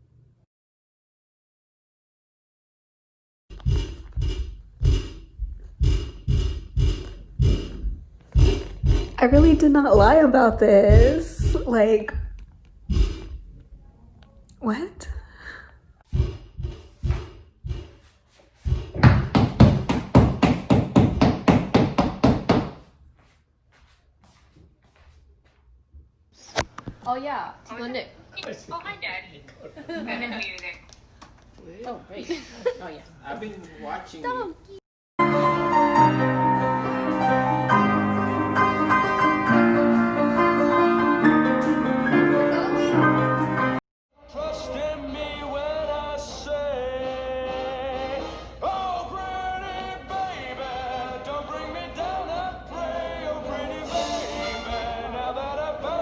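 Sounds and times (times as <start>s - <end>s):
heavy footsteps stomping upstairs: 3.6s - 13.5s, 16.1s - 18.0s, 18.6s - 22.9s.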